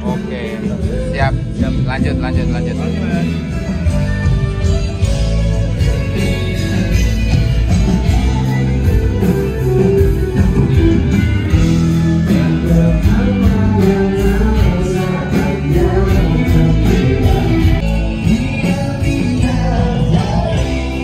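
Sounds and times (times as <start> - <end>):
band playing rock music: 0.0 - 21.0
person singing: 11.5 - 21.0.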